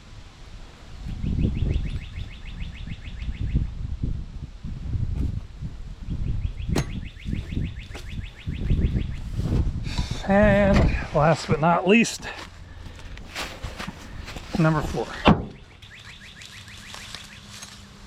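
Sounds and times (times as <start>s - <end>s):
wind buffeting microphone: 0.0s - 15.7s
bird trilling: 1.2s - 3.7s, 6.3s - 9.3s, 15.4s - 17.9s.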